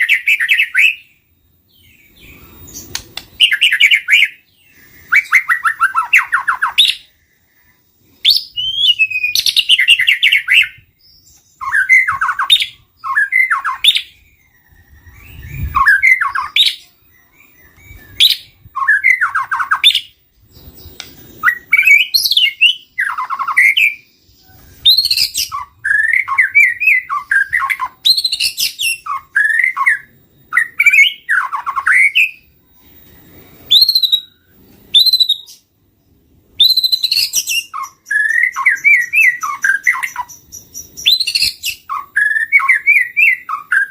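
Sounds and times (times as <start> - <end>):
bird singing whistles and trills: 0.0 - 43.9.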